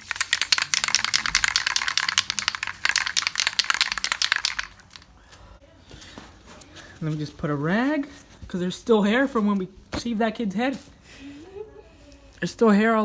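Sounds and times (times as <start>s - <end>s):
crackling and clicking of handling: 0.0s - 7.4s.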